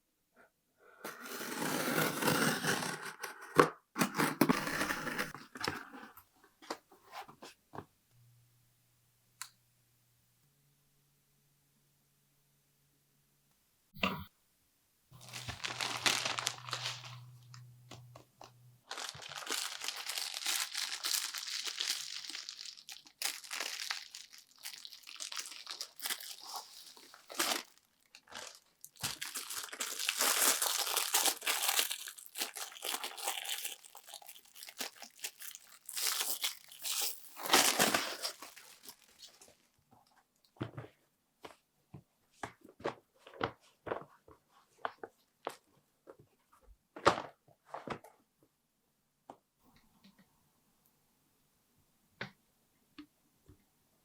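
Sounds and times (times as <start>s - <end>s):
packaging tearing and crinkling: 15.2s - 17.6s, 18.8s - 39.6s.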